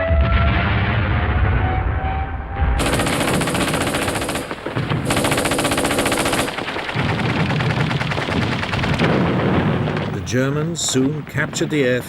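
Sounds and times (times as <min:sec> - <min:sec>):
machine-gun fire: 0:02.8 - 0:10.3.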